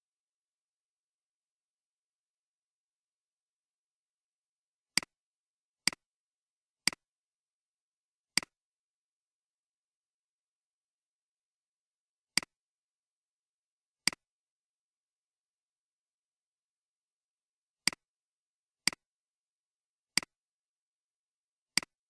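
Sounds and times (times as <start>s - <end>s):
computer mouse clicks: 6.8s - 7.0s, 21.8s - 22.0s.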